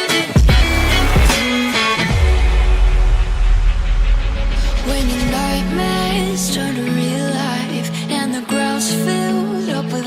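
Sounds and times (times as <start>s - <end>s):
electronic music with guitar: 0.0s - 10.0s
heavy bass: 0.4s - 7.7s.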